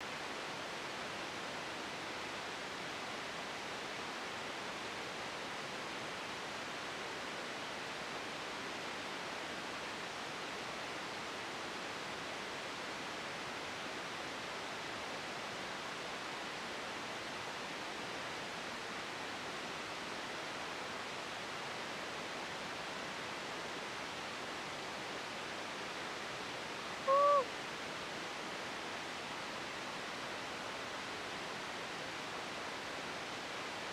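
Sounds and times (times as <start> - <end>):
short rising falling call: 27.1 - 27.5.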